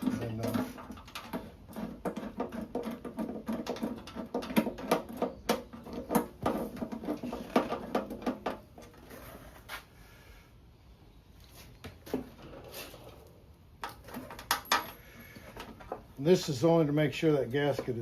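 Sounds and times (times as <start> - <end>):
metal bolts clinking and rattling: 13.8 - 16.1.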